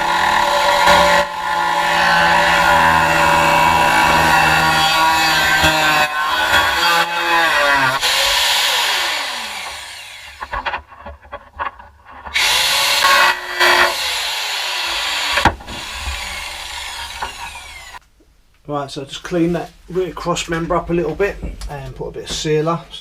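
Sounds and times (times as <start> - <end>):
angle grinder on metal: 0.0 - 11.0, 12.2 - 18.0.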